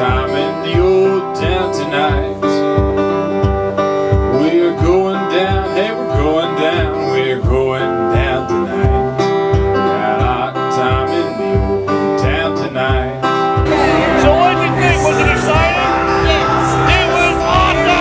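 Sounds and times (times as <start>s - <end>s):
acoustic guitar melody: 0.0s - 18.0s
low bass beat: 13.6s - 18.0s.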